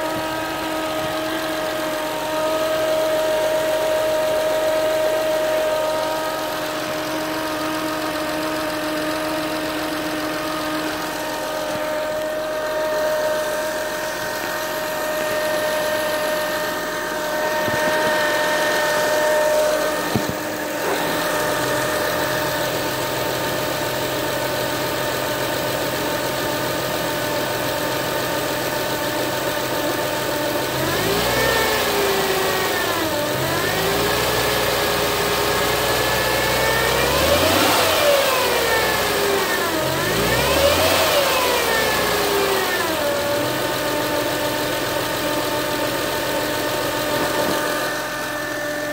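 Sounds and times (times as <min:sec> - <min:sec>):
car engine idling and revving: 0:00.0 - 0:48.9
high-pitched whine: 0:09.9 - 0:23.1.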